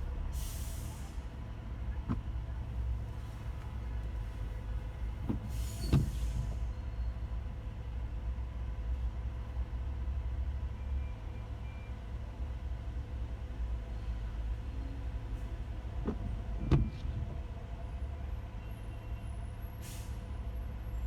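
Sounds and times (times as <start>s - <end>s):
car rumble from inside cabin: 0.0s - 10.6s, 12.5s - 18.6s.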